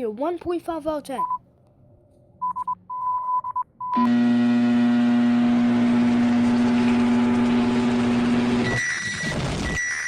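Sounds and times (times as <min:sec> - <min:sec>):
harsh electronic alarm buzz: 0:07.3 - 0:10.0.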